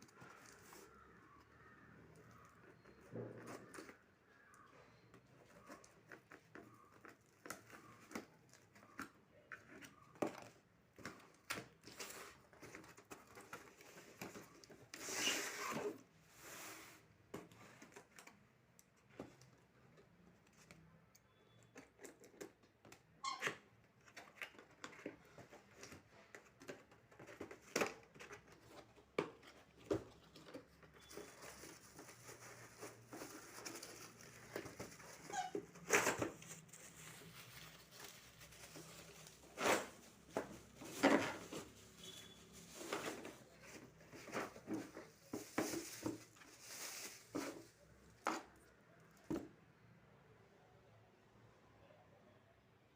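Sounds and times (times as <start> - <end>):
wrapping rustling and crinkling: 24.0 - 48.7.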